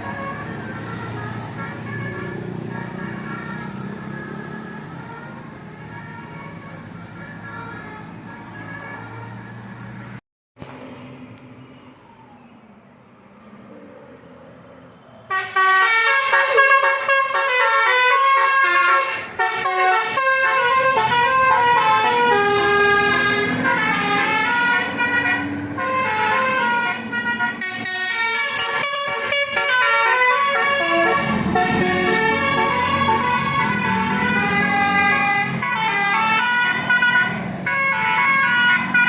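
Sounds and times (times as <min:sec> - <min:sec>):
musical air horn melody: 0:15.3 - 0:39.0.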